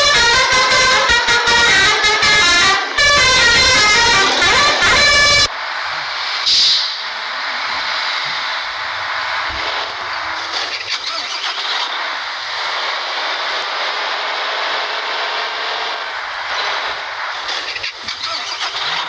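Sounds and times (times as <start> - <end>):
road vehicles passing: 0.0 - 19.0.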